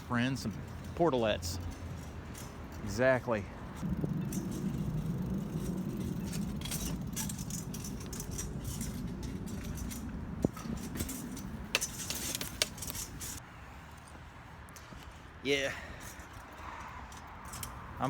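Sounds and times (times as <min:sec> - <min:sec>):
light rattling and jingling: 0:00.0 - 0:13.4, 0:15.6 - 0:18.0
steady low rumble: 0:03.4 - 0:13.4.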